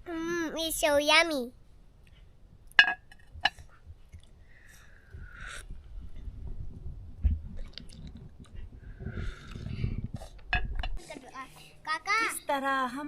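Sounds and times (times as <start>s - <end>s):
child slurping from a cup: 9.1s - 10.4s.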